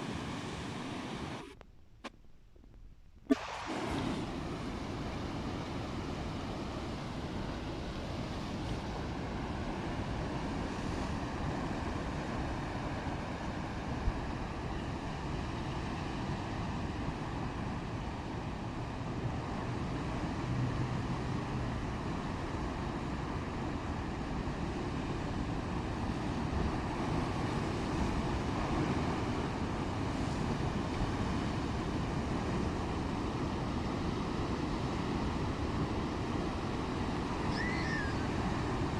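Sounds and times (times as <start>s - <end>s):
waves rushing: 0.0s - 1.6s, 3.2s - 38.9s
wind: 0.0s - 38.9s.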